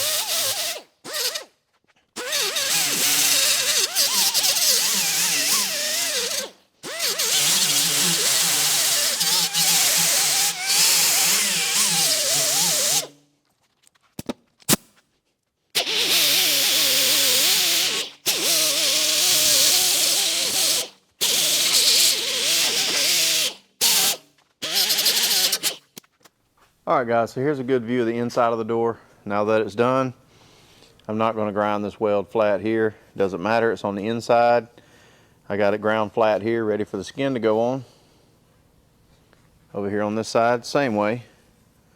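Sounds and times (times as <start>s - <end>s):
angle grinder grinding steel: 0.0s - 1.5s, 2.2s - 13.2s, 15.8s - 25.8s.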